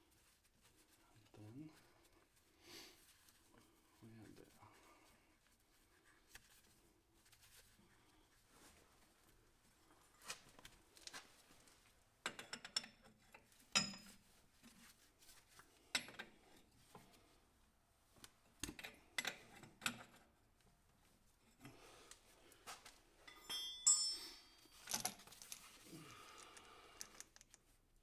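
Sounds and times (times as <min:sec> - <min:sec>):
metal tools clinking: 0:23.2 - 0:27.6.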